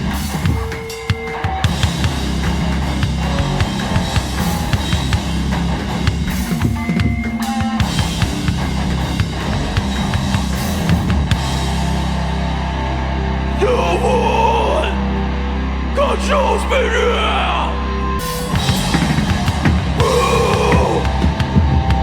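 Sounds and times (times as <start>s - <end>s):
pounding drum kit: 0.0s - 12.0s, 18.4s - 22.0s
loud hardcore music: 0.0s - 22.0s
heavy bass line: 1.7s - 7.2s, 7.8s - 22.0s.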